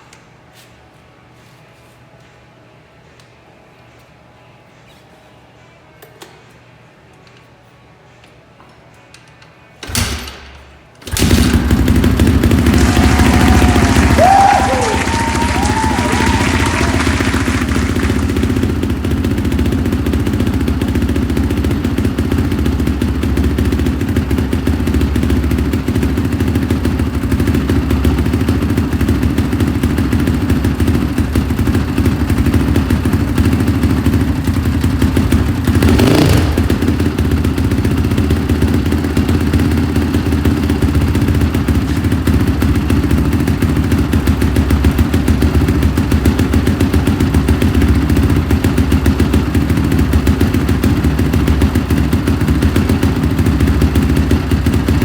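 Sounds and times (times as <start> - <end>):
motorcycle engine idling: 11.1 - 55.0.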